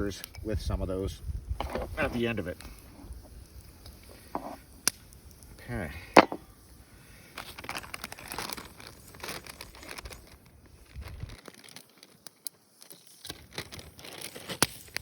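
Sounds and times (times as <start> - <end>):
food packaging crinkling: 7.4 - 15.0.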